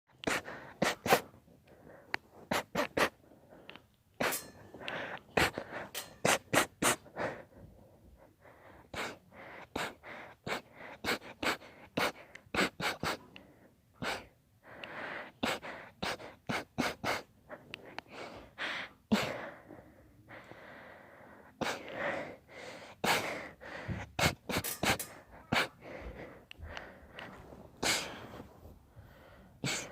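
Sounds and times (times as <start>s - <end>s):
gasping breaths: 0.1s - 29.9s
person sneezing: 0.3s - 1.3s, 2.5s - 3.2s, 5.4s - 7.1s, 9.8s - 13.3s.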